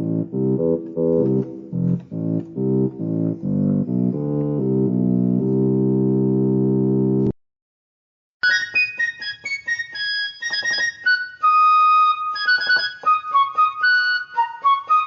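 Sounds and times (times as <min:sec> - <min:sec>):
electronic keyboard chords: 0:00.0 - 0:07.4.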